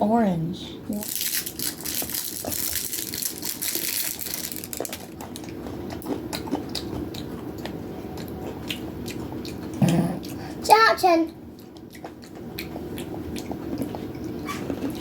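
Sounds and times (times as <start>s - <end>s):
plastic packaging crinkling: 1.0s - 5.2s.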